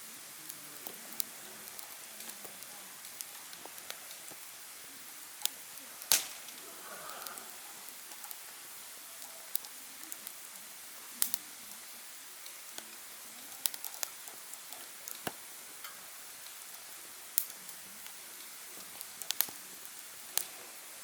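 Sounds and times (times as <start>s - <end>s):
wood fire crackling: 0.0s - 21.0s.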